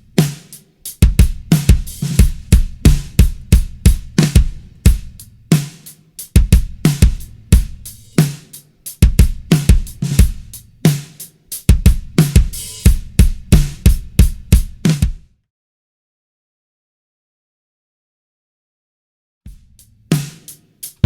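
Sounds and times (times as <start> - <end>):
drum kit groove: 0.0 - 15.3, 19.5 - 21.0
bass drum thumps: 1.0 - 5.5, 6.4 - 8.0, 9.0 - 10.6, 11.7 - 15.3.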